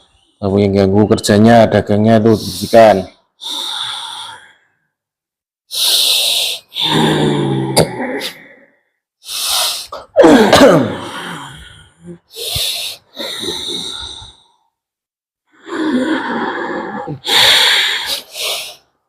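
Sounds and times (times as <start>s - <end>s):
person groaning: 6.8s - 8.6s, 10.0s - 12.2s, 15.7s - 17.6s
heavy breaths and gasps: 8.2s - 14.8s, 15.5s - 19.0s.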